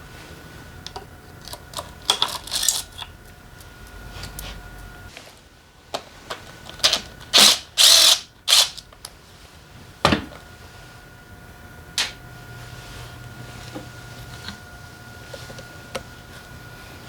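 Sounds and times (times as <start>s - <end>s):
ratcheting tool bursts: 7.3s - 8.8s.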